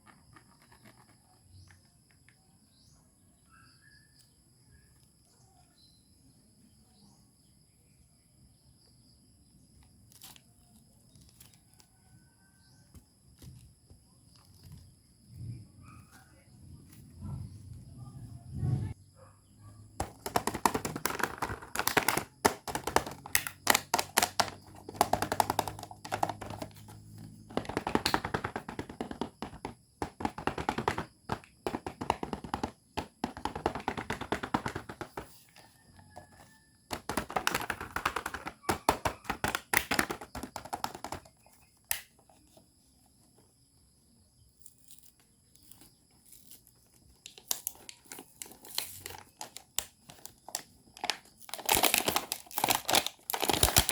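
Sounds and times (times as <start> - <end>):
plastic toy parts clicking and tapping: 20.0 - 35.5, 36.1 - 42.4, 46.9 - 53.9.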